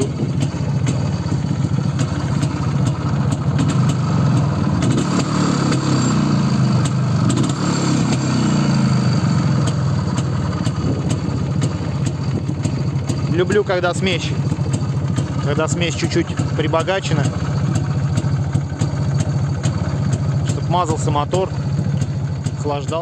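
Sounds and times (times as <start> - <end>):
two-stroke motorcycle engine idling: 0.0 - 23.0.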